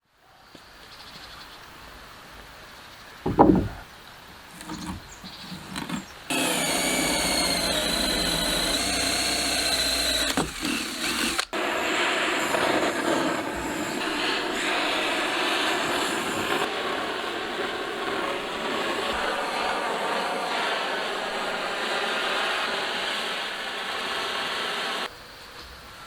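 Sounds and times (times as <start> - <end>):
heavy thump: 3.3 - 3.9
light knocks: 3.3 - 3.9
power tool whining: 4.5 - 16.7, 19.0 - 25.1.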